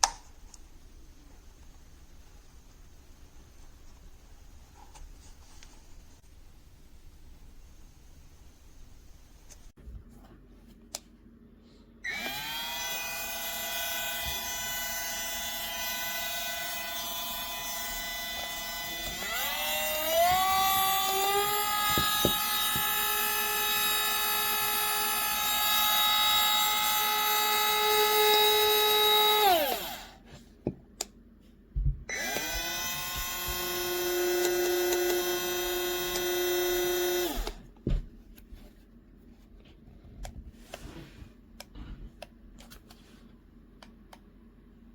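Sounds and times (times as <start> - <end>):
rotary tool motor whine: 12.1 - 30.2, 32.1 - 37.6.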